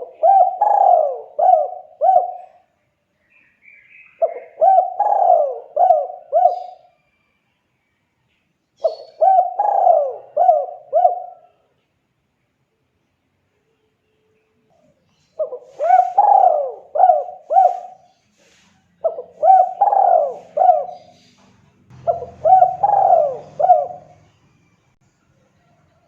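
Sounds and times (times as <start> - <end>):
dove cooing: 0.0 - 2.7, 4.2 - 6.9, 8.8 - 11.7, 14.8 - 24.3.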